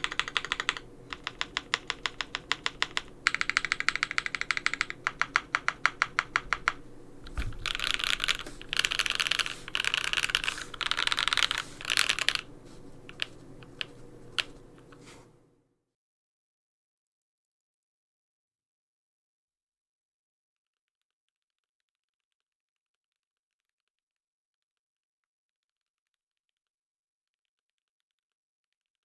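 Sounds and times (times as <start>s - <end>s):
mechanical keyboard typing: 0.0s - 15.3s.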